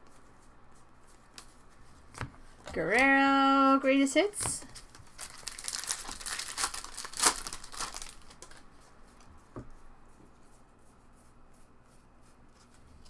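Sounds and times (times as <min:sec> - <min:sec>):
cards rustling: 0:01.0 - 0:09.3
foil wrapper tearing and crinkling: 0:04.7 - 0:08.7.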